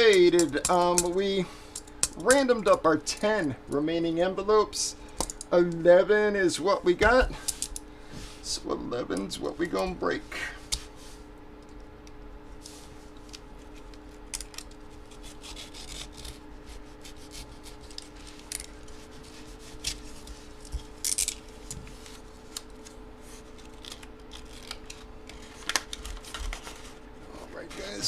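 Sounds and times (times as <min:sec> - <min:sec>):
faint hum: 0:00.0 - 0:28.0
paper envelope scratching: 0:14.8 - 0:20.6, 0:23.2 - 0:27.0.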